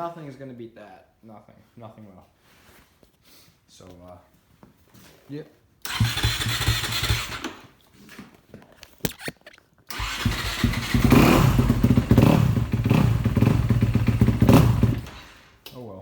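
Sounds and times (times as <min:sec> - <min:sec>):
sharp click: 0:08.8 - 0:09.6
motorcycle engine running: 0:10.0 - 0:15.4.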